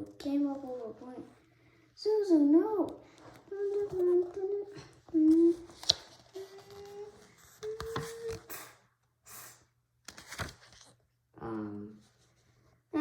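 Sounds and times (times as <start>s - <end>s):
child humming: 6.3s - 8.7s.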